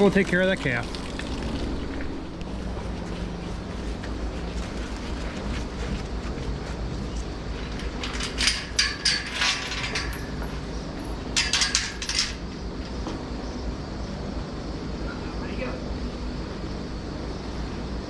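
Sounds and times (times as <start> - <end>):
steady low hum: 0.0 - 18.0
clattering and clinking: 7.0 - 12.6.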